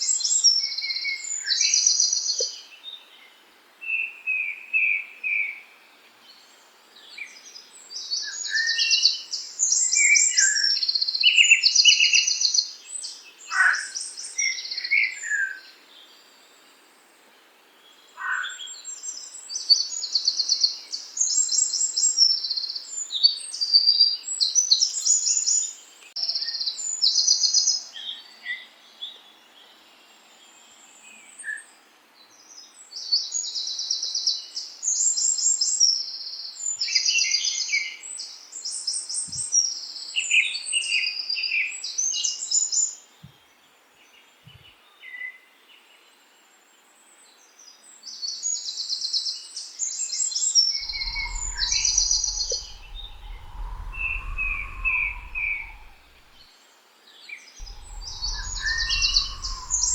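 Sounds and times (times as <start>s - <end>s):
low rumble: 50.8s - 56.4s, 57.6s - 59.9s
songbirds chirping: 50.8s - 56.4s, 57.6s - 59.9s.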